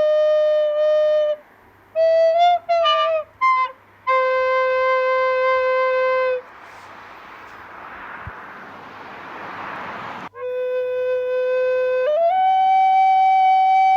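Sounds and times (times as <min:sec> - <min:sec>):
flute playing slow melody: 0:00.0 - 0:06.5, 0:10.3 - 0:13.9.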